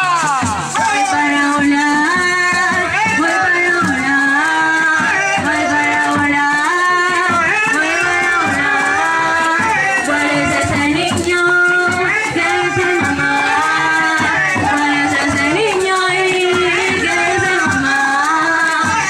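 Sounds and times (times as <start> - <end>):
maracas rattling: 0.0 - 19.0.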